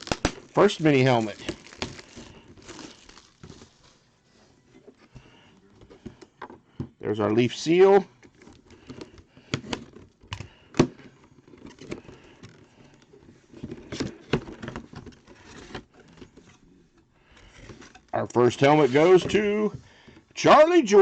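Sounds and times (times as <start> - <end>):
packaging rustling: 0.0 - 4.2.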